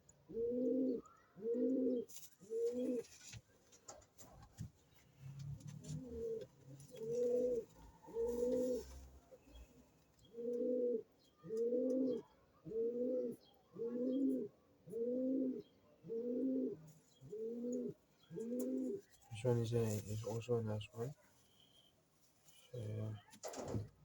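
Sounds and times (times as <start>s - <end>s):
pigeon cooing: 0.3s - 3.1s, 5.8s - 9.7s, 10.3s - 19.1s.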